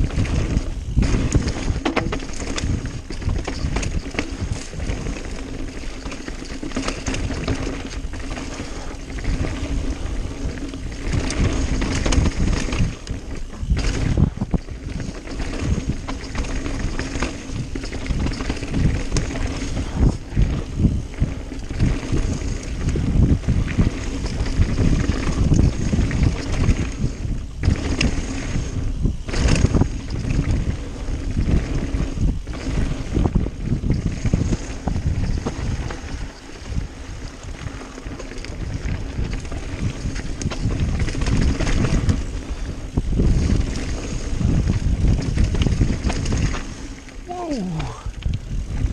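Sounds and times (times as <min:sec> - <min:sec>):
bike rattling: 0:00.0 - 0:48.9
tyres rolling over dirt and rock: 0:00.0 - 0:48.9
wind rushing over microphone: 0:00.0 - 0:48.9.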